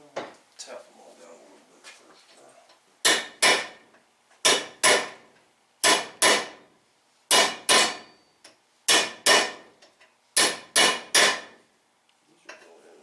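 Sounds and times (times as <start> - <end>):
hammer striking steel: 3.1 - 3.8, 4.5 - 5.2, 5.8 - 6.6, 7.3 - 8.1, 8.9 - 9.6, 10.4 - 11.5.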